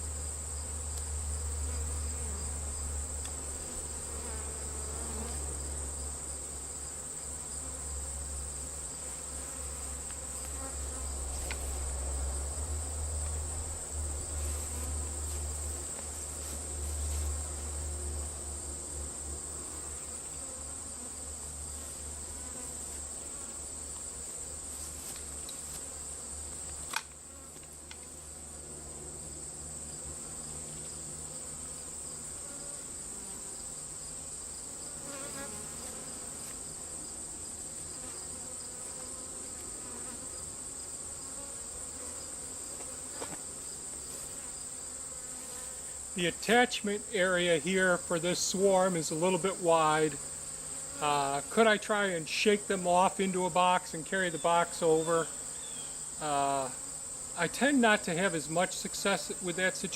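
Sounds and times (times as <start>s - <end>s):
bees buzzing: 0.0s - 59.9s
crickets chirring: 0.0s - 59.9s
sharp click: 26.9s - 27.2s.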